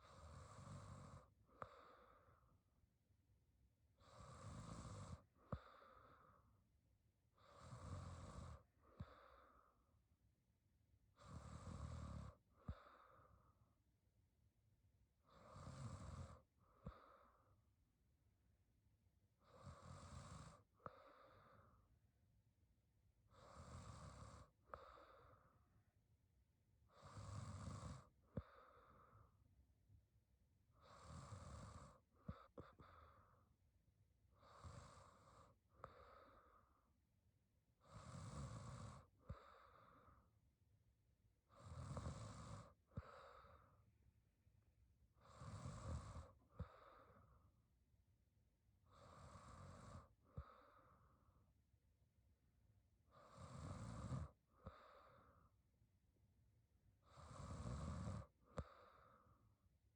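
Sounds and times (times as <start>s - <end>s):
soft breath out with click: 58.5s - 59.2s.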